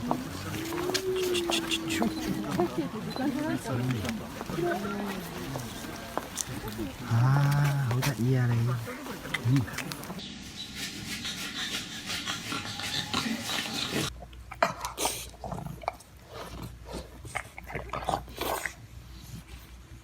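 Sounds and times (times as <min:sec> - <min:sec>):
dog rubbing and scraping: 0:00.0 - 0:14.1.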